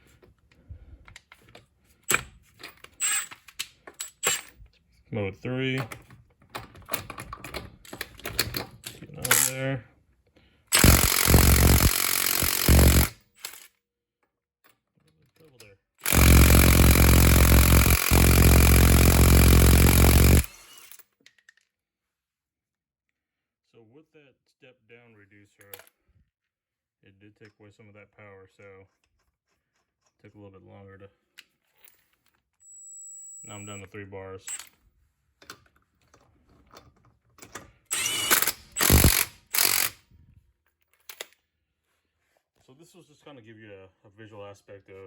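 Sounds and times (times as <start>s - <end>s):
impact wrench rattling: 10.8s - 13.6s, 16.0s - 20.6s, 38.0s - 40.0s.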